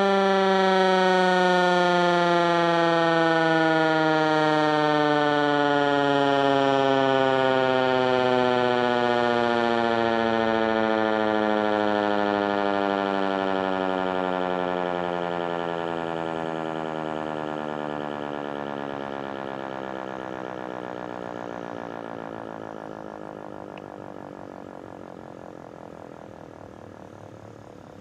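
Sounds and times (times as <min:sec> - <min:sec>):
warning siren winding down: 0:00.0 - 0:28.0.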